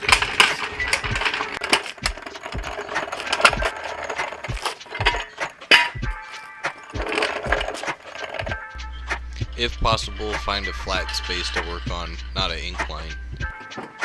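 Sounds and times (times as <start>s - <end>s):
metal clinking and clattering: 0.0s - 9.2s, 12.9s - 14.0s
background music with a beat: 0.0s - 14.0s.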